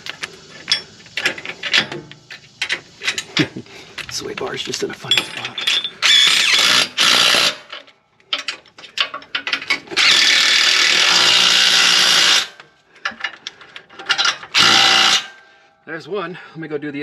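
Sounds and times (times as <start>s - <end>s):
power tool driving a bolt: 5.6s - 8.5s, 9.3s - 15.4s.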